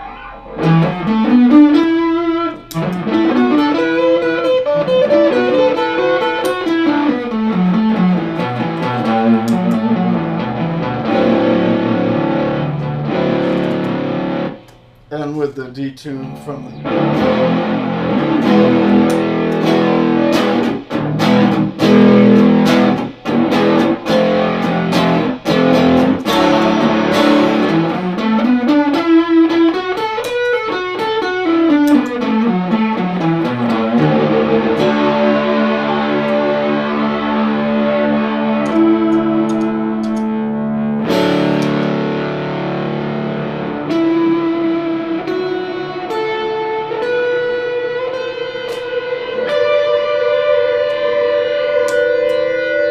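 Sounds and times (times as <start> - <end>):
electric guitar through effects pedal: 0.0 - 52.9.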